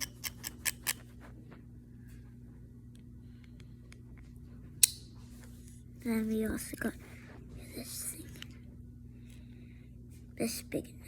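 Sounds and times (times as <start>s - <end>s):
pocket knife tools clicking: 0.0s - 1.0s.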